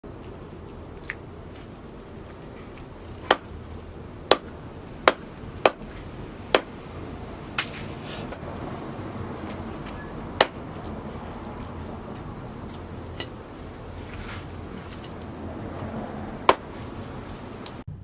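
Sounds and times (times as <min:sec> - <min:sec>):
knife chopping on cutting board: 0:05.1 - 0:05.9.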